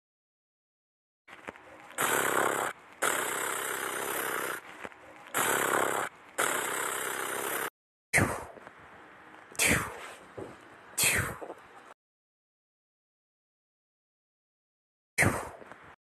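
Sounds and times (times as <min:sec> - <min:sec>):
gun hissing bursts: 0:02.0 - 0:04.6, 0:05.4 - 0:07.7.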